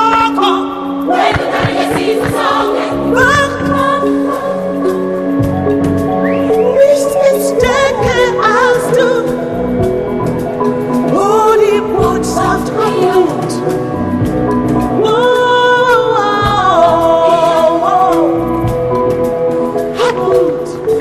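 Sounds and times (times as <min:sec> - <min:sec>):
low thuds: 0:01.2 - 0:03.6.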